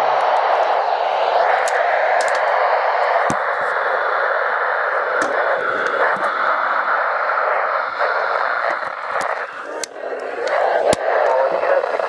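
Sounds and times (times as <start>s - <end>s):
radio static hiss: 0.1s - 12.0s
sharp clicks: 1.5s - 2.5s, 8.7s - 11.6s.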